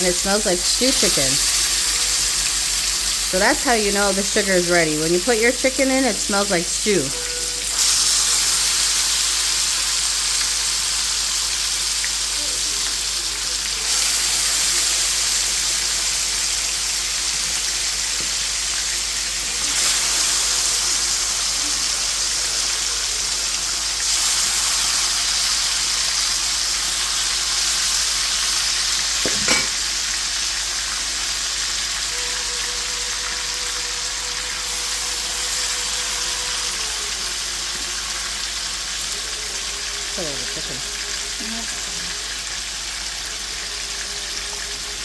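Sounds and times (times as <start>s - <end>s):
chicken sizzling in hot oil: 0.0s - 45.0s.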